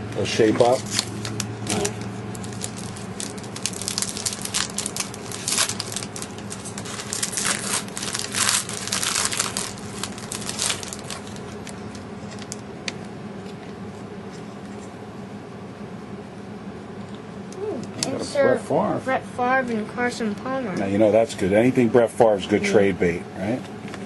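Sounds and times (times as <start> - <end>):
wrappers tearing and crinkling: 0.3 - 12.6.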